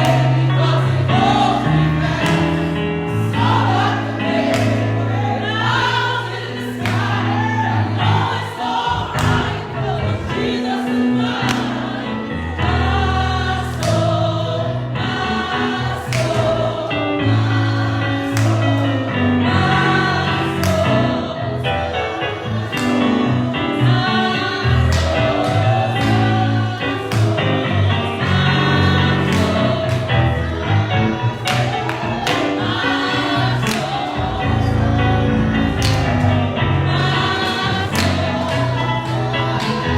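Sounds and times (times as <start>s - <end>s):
gospel choir singing: 0.0s - 39.9s.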